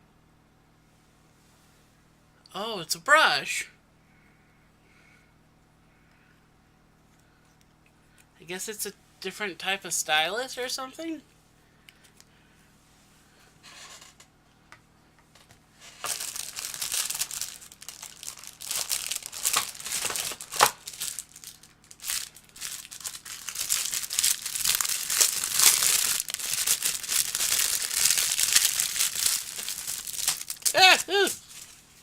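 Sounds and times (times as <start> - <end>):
packaging crinkling and rustling: 15.8 - 32.0.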